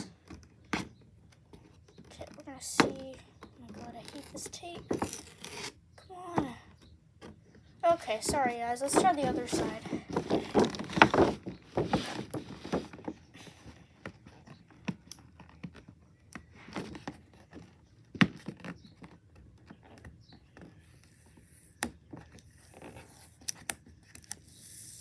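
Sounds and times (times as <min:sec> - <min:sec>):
fingers scraping packing tape: 0:03.7 - 0:05.8, 0:20.8 - 0:25.0.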